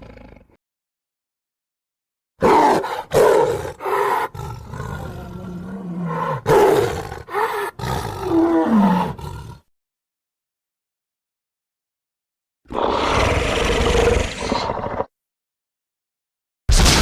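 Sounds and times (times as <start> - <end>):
dinosaur roars: 0.0 - 0.6, 2.4 - 9.6, 12.7 - 15.1
low growl: 2.8 - 9.6, 12.7 - 15.1.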